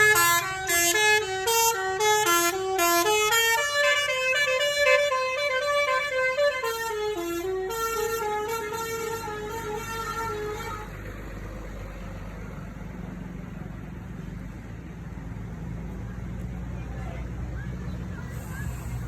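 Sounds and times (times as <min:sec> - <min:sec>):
bus musical horn melody: 0:00.0 - 0:11.2.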